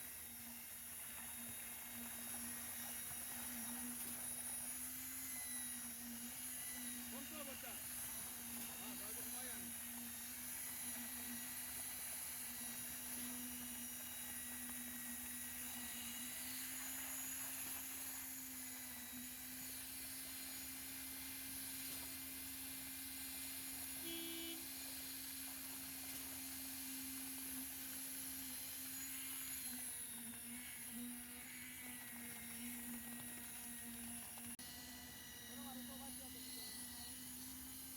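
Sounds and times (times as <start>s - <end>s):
concrete vibrator humming: 0.0s - 37.9s.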